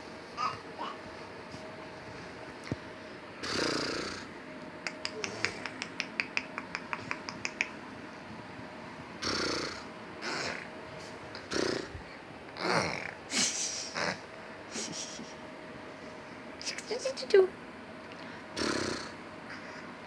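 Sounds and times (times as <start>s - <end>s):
baby snorting noises: 0.4s - 1.1s, 3.4s - 4.3s, 5.1s - 5.7s, 9.2s - 10.7s, 11.4s - 12.0s, 18.6s - 19.2s
baby mouth clicks: 4.8s - 7.8s.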